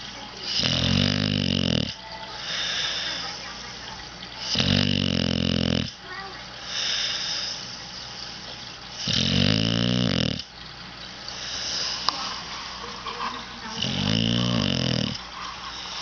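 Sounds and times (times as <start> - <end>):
dog snoring: 0.4 - 3.8, 4.4 - 7.8, 8.4 - 10.6, 13.6 - 16.0
breathy breathing: 1.9 - 10.5, 11.2 - 16.0.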